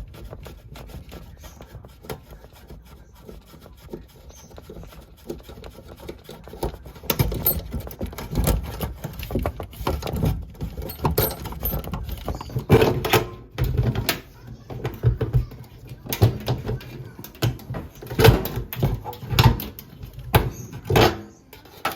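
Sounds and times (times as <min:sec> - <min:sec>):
hand tools clicking and rattling: 0:04.4 - 0:21.9
metal faucet parts knocking: 0:06.1 - 0:14.2.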